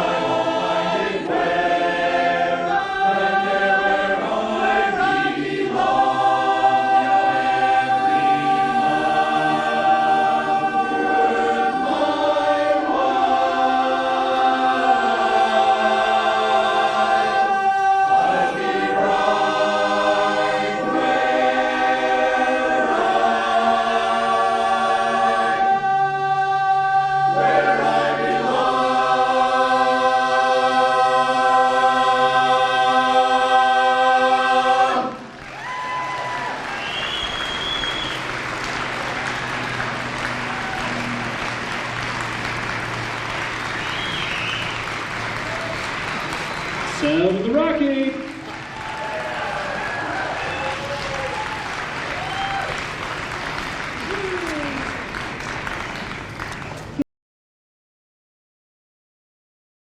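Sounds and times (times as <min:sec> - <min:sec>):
barbershop chorus singing: 0:00.0 - 0:35.4, 0:36.3 - 0:52.2.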